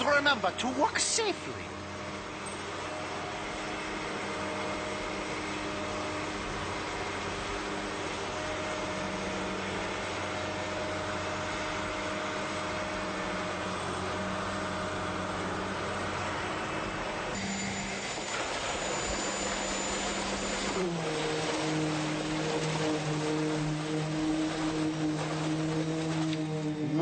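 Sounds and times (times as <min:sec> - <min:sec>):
construction machinery engines: 0:00.0 - 0:27.0
faint high whine: 0:10.4 - 0:27.0.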